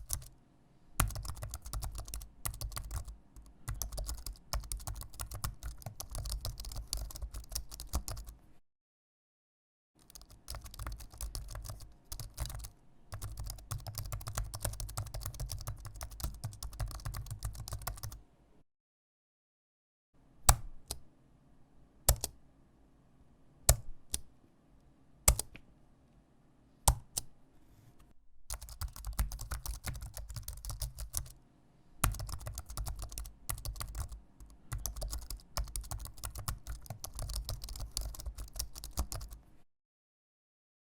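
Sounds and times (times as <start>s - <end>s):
fast typing on mechanical keyboard: 0.0s - 0.3s, 1.0s - 8.3s, 10.0s - 18.2s, 28.5s - 31.4s, 32.0s - 39.4s.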